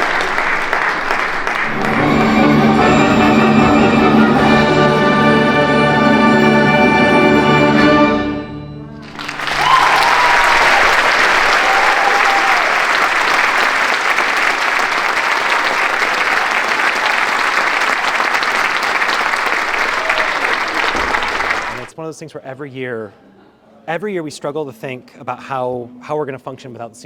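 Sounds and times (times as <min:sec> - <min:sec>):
audience applauding: 0:00.0 - 0:03.2, 0:09.0 - 0:21.9
audience whooping: 0:09.0 - 0:21.9.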